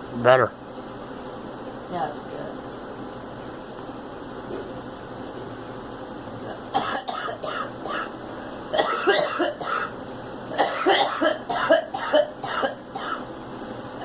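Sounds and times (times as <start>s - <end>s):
girl coughing: 6.7s - 13.2s.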